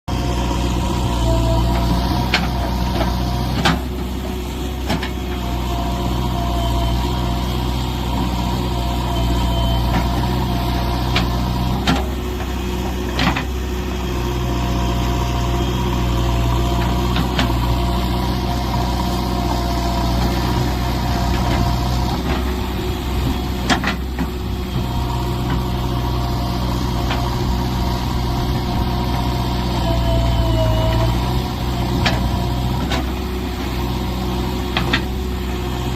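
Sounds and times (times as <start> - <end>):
diesel engine running: 0.0 - 35.9
wavering whine: 24.4 - 32.6.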